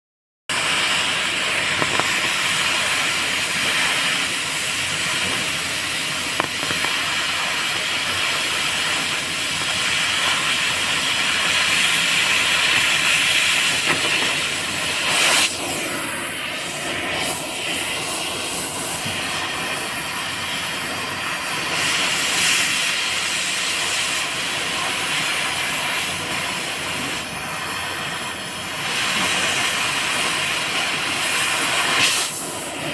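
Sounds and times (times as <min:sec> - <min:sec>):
cutting torch hissing: 0:00.5 - 0:32.9
short sharp torch burst: 0:00.5 - 0:32.9.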